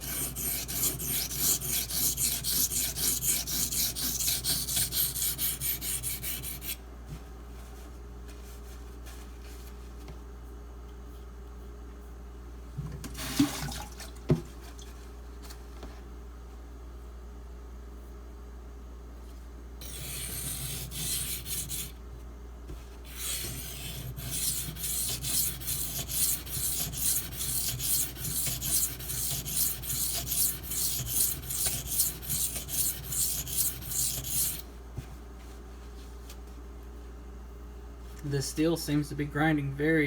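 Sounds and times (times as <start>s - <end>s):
knife scraping on whetstone: 0.0s - 6.8s, 19.8s - 21.9s, 23.1s - 34.6s.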